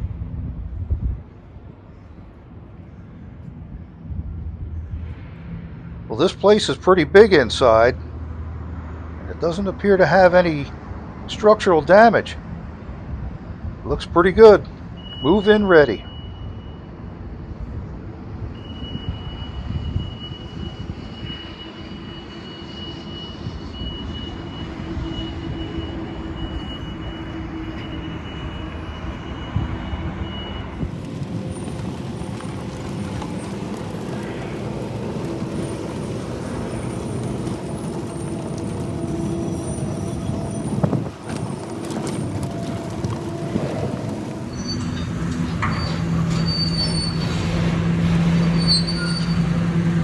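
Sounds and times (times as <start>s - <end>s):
heavy machinery engine running: 24.0s - 50.0s.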